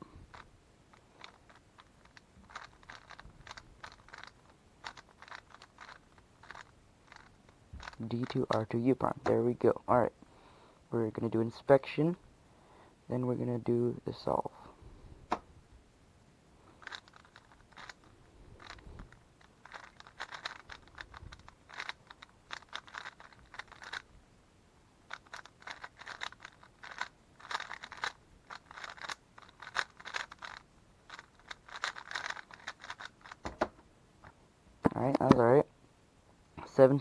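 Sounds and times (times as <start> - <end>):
puzzle cube turning clicks: 0.3 - 9.4, 16.8 - 24.1, 25.1 - 33.7.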